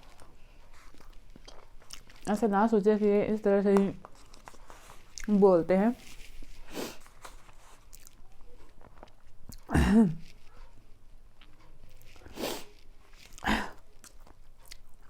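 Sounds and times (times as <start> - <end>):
person chewing and slurping: 0.0 - 2.3, 11.3 - 15.0.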